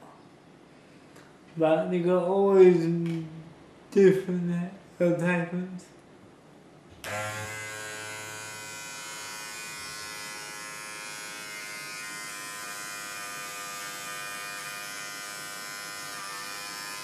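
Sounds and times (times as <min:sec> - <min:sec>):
beard trimmer buzzing: 0:07.0 - 0:17.0.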